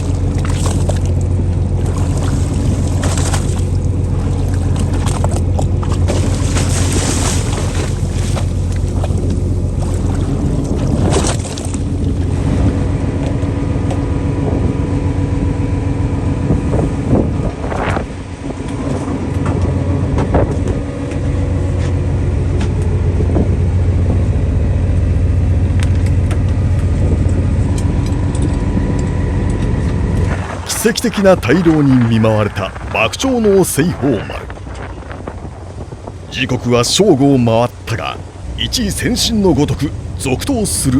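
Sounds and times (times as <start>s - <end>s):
boat engine humming: 0.0s - 40.9s
sea noise: 0.0s - 40.9s
wind: 0.0s - 40.9s.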